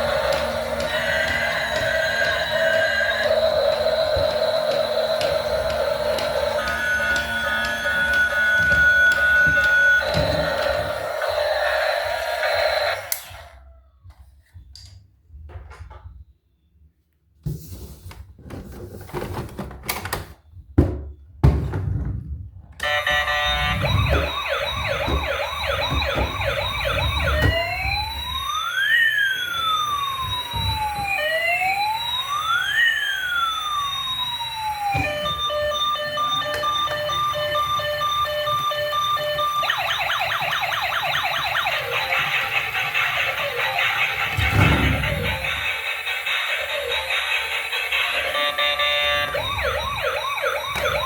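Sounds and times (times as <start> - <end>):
toy electronic siren: 0.0 - 13.9, 22.8 - 51.0.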